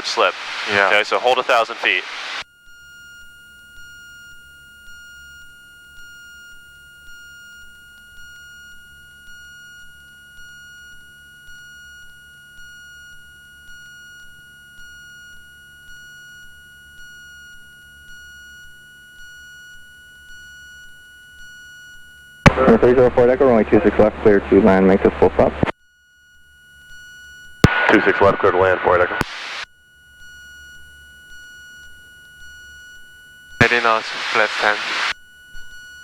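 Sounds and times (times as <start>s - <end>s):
low hum: 0.0s - 2.4s, 22.5s - 25.7s, 33.6s - 35.1s.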